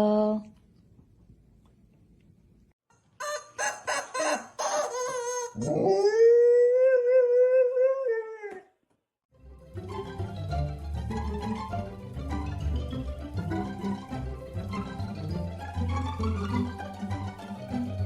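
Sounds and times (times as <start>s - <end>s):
dog howling: 5.5s - 8.7s
plucked string music: 9.6s - 18.0s.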